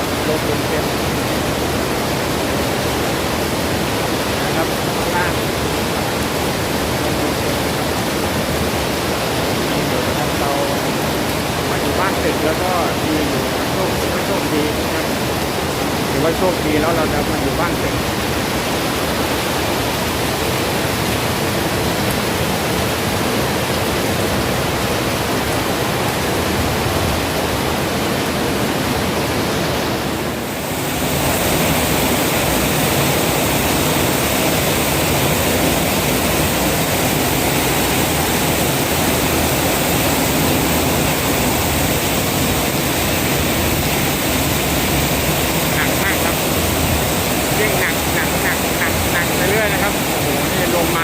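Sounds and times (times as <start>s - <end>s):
heavy rain: 0.0s - 51.0s
strong wind: 0.0s - 51.0s.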